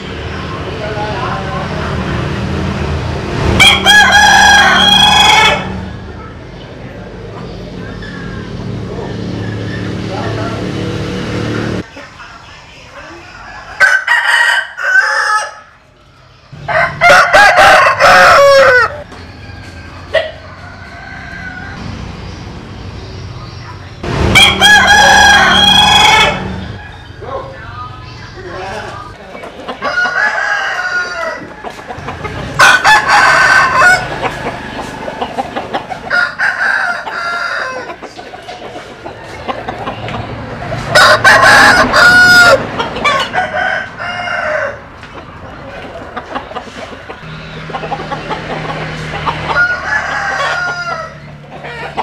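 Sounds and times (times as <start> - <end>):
rooster crowing: 3.6 - 5.9, 13.4 - 15.8, 16.6 - 21.9, 24.3 - 27.1, 29.8 - 35.4, 36.0 - 38.0, 40.9 - 44.9, 49.2 - 52.0
chicken clucking: 16.2 - 22.4, 24.4 - 52.0.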